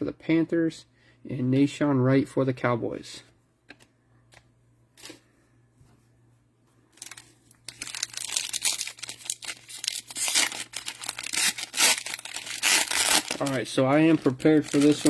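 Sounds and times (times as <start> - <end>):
cellophane wrapper tearing and crinkling: 7.0 - 15.0.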